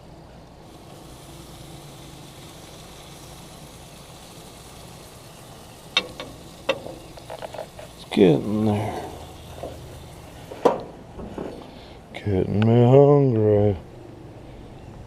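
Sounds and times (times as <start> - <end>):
meat sizzling on a grill: 0.6 - 10.9
tongs clicking on grill: 5.8 - 10.0.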